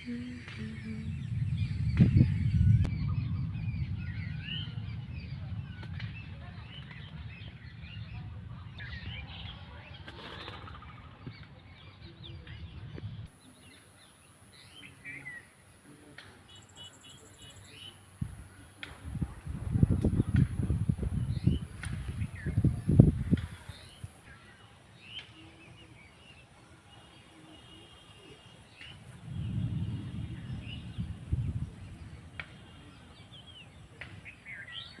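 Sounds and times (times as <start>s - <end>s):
low rumble: 0.0s - 10.0s, 29.2s - 32.6s
birds chirping: 0.0s - 35.0s.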